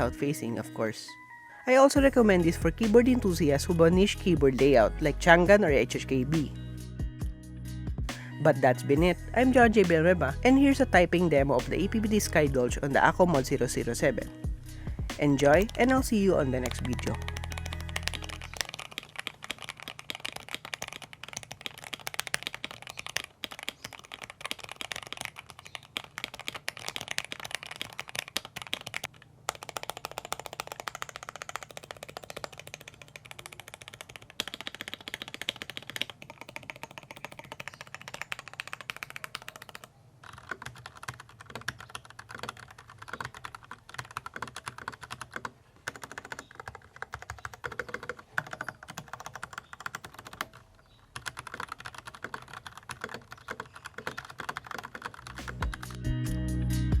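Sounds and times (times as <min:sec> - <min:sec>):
mechanical keyboard typing: 0:15.1 - 0:56.0.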